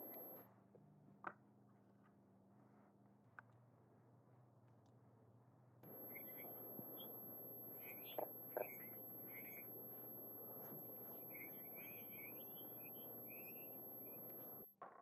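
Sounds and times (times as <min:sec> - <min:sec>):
outdoor hiss: 0:00.0 - 0:00.4, 0:05.8 - 0:14.7
small birds chirping: 0:05.8 - 0:14.7.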